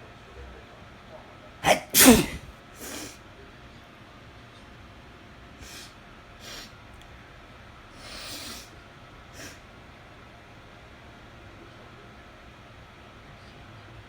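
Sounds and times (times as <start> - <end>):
woman sniffing: 1.6 - 3.2, 8.0 - 8.7.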